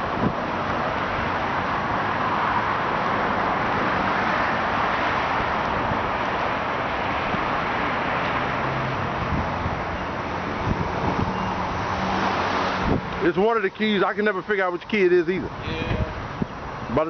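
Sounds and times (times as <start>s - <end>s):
road traffic rushing: 0.0s - 17.0s.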